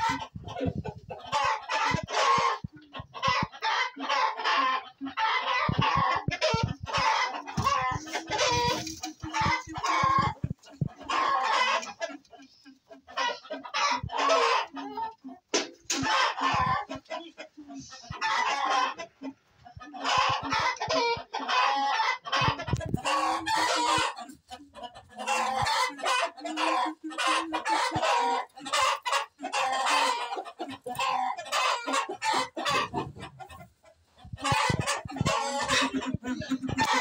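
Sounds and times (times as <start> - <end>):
roosters crowing: 0.0 - 0.2, 34.5 - 37.0.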